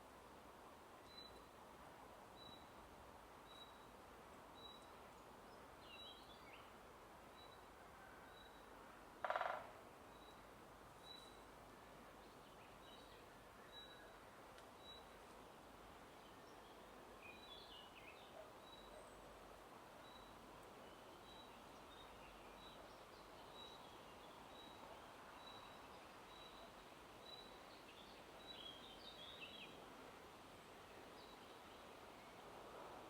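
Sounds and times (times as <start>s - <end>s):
wind in leaves: 0.0s - 33.0s
faint bird chirps: 12.7s - 14.2s.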